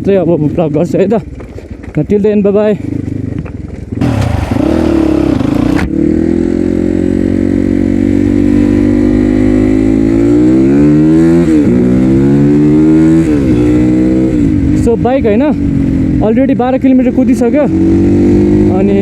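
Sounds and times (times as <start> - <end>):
dirt bike engine revving: 3.9 - 14.9, 17.7 - 19.0.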